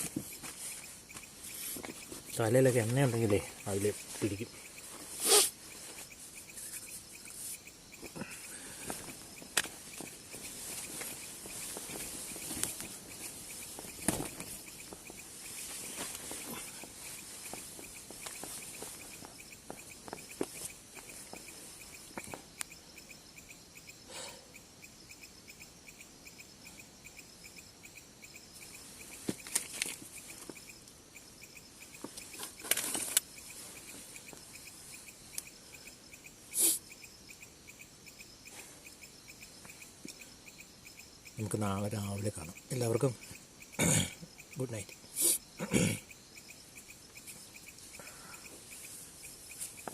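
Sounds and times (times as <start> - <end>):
crickets chirping: 0.0 - 49.9
rustling and handling clicks: 32.0 - 34.4.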